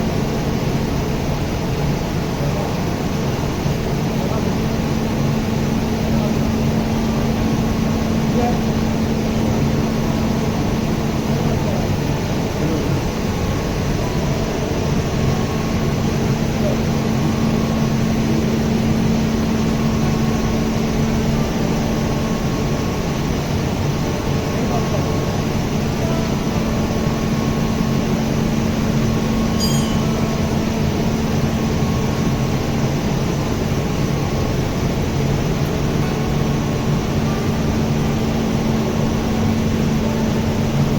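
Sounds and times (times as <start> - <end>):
machinery hum: 0.0 - 40.9
low steady tone: 29.4 - 30.4.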